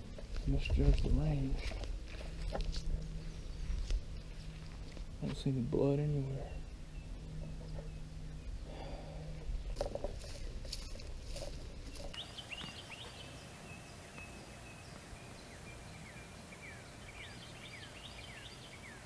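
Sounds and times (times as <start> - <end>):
bird chirping: 12.1 - 19.0.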